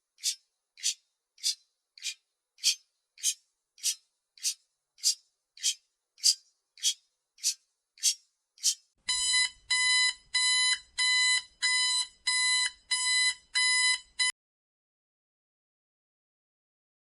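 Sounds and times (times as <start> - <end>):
electronic alarm beeps: 9.1 - 14.3.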